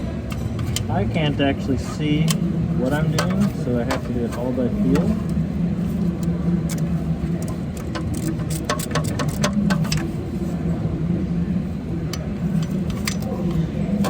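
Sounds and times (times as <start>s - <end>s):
steady low hum: 0.0s - 14.0s
ratchet wrench clicking: 6.2s - 10.1s.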